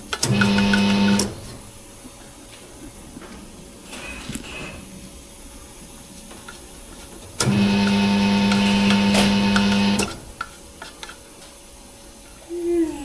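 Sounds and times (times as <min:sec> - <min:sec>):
electric motor whining hum: 0:00.0 - 0:01.9, 0:07.4 - 0:10.5.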